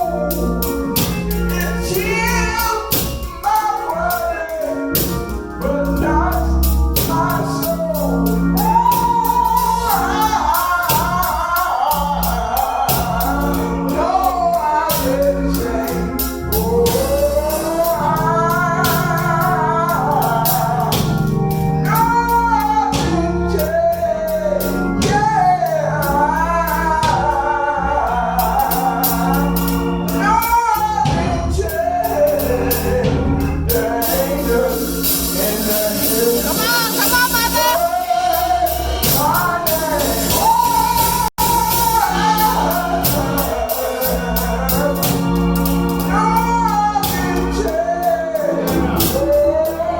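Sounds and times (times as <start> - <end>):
voices singing gospel: 0.0 - 49.9
tambourine beat: 28.4 - 49.8.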